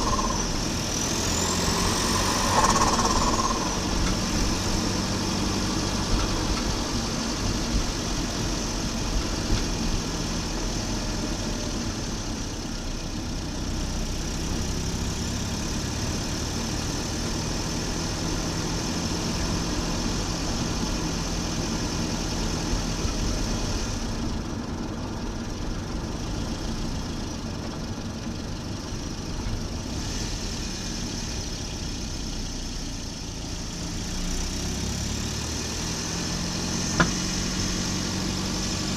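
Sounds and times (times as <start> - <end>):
car engine running: 0.0 - 38.9
sharp ticks: 2.5 - 4.2.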